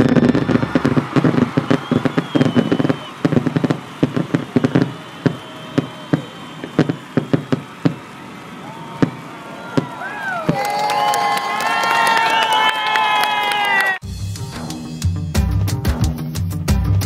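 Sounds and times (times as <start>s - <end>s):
fireworks crackling: 0.0s - 11.3s.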